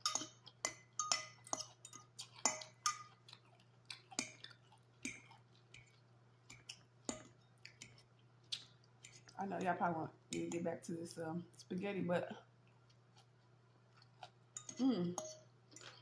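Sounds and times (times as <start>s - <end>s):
cutlery clinking on a dish: 0.0s - 3.1s, 14.6s - 16.0s
chewing crunchy salad: 0.0s - 9.4s, 12.4s - 16.0s.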